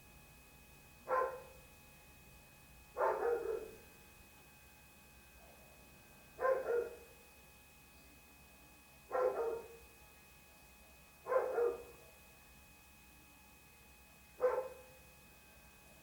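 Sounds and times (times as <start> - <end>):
faint steady background noise: 0.0 - 16.0
dog barking: 1.1 - 1.6, 3.0 - 3.8, 6.4 - 7.1, 9.1 - 9.8, 11.2 - 12.1, 14.4 - 15.0.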